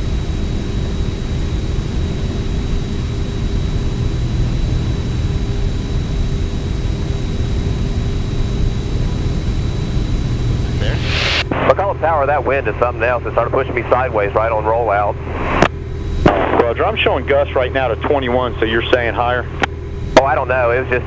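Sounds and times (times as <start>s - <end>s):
airplane engine and propeller drone: 0.0s - 21.0s
faint high whine: 0.0s - 21.0s.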